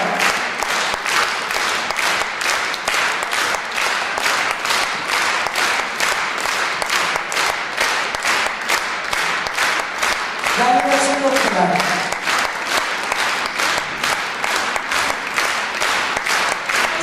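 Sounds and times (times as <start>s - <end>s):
audience applauding: 0.0s - 17.0s.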